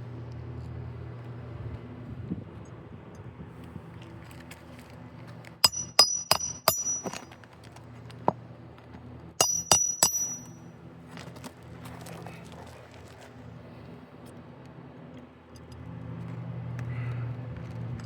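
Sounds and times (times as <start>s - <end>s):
hammer blows on metal: 5.6s - 7.3s, 9.4s - 10.6s.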